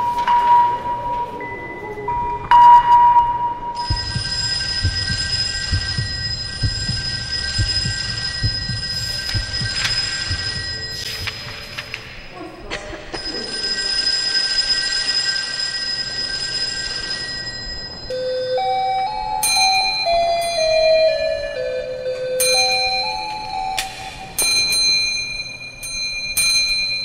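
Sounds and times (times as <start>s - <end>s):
high electronic tones: 3.8s - 11.6s
irregular low rumble: 3.8s - 11.6s
knocks: 3.8s - 11.8s.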